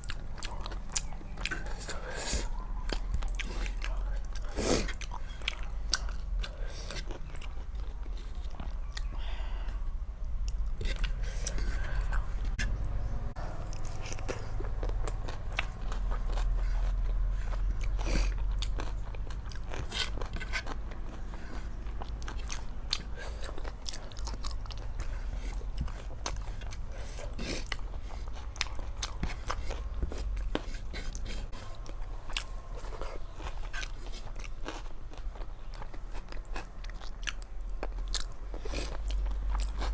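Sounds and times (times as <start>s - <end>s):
chewing and biting food: 0.0s - 39.9s
steady low hum: 0.0s - 39.9s.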